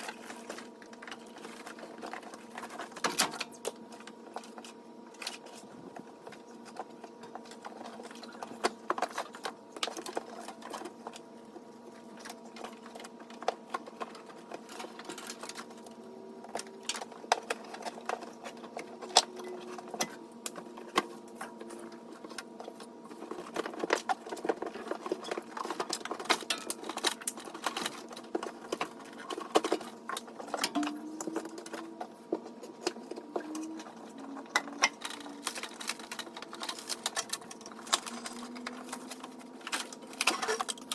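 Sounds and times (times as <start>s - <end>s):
rapid clicking and clatter of tools: 12.0s - 40.9s.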